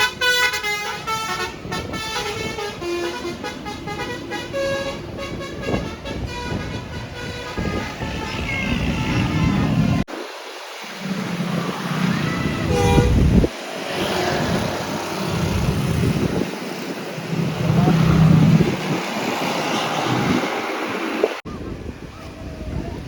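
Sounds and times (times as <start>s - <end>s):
traffic noise: 0.0s - 23.0s
horn blast: 12.5s - 13.5s.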